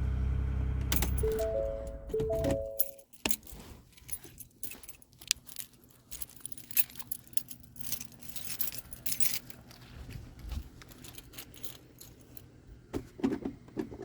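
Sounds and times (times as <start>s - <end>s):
keys jingling: 0.9s - 9.9s, 10.5s - 12.5s
short chime tone: 1.2s - 3.0s.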